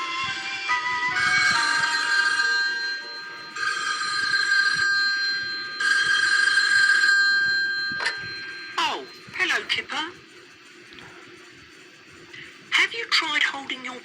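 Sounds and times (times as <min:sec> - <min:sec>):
electric bell ringing: 0:00.0 - 0:09.9.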